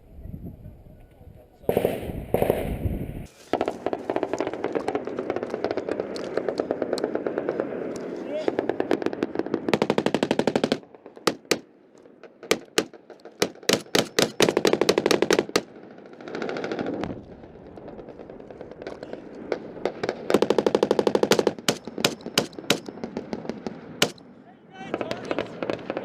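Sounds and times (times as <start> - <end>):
machine-gun fire: 1.7 - 2.8, 8.5 - 11.7, 12.3 - 24.2
single gunshots: 1.7 - 2.8, 12.4 - 15.7, 19.8 - 24.3.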